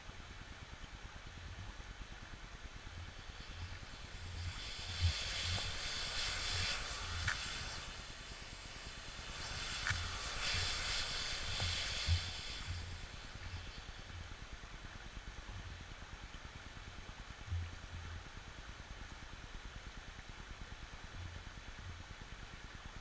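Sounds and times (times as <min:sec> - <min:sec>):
matches hissing as they flare: 0:03.1 - 0:14.0
sharp crackles: 0:03.2 - 0:13.7.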